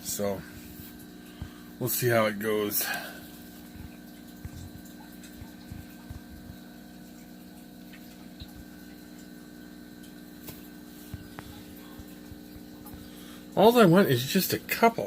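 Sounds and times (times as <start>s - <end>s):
low electrical hum: 0.0s - 15.0s
faint light clicks and taps: 3.6s - 7.3s.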